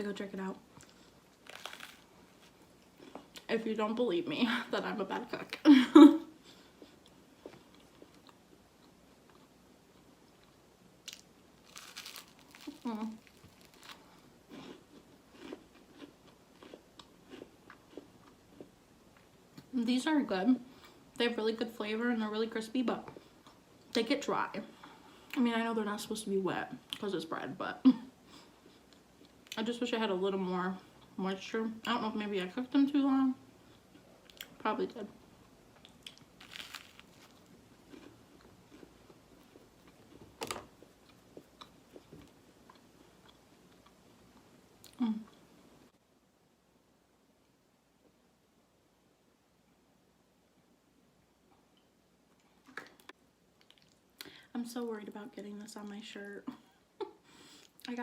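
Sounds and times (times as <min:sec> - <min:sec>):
crunchy bread chewing: 0:00.8 - 0:03.5, 0:06.7 - 0:19.3, 0:35.8 - 0:44.0.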